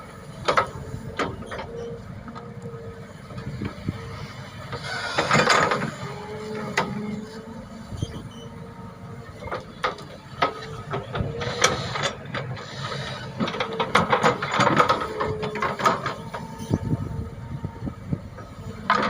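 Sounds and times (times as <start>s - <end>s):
excavator engine running: 0.0s - 19.0s
metallic clanks and knocks: 13.4s - 16.8s.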